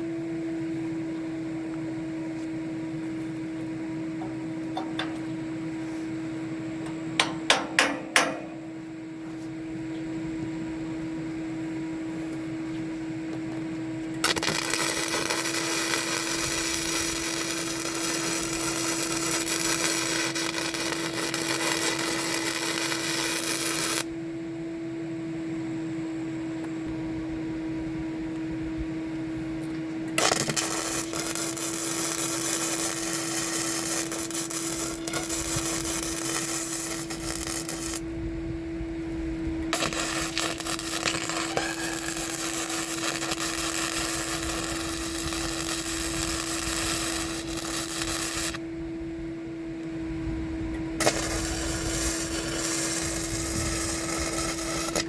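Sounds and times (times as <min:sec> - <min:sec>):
steady hum: 0:00.0 - 0:55.0
power tool running: 0:13.6 - 0:24.2, 0:30.1 - 0:38.1, 0:39.0 - 0:48.7, 0:50.7 - 0:55.0.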